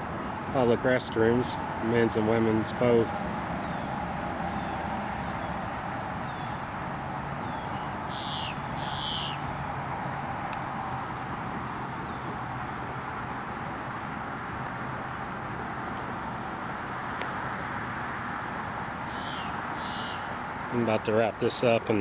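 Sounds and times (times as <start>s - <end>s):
outdoor background hum: 0.0s - 22.0s
harsh bird calls: 7.4s - 9.7s, 19.0s - 20.4s.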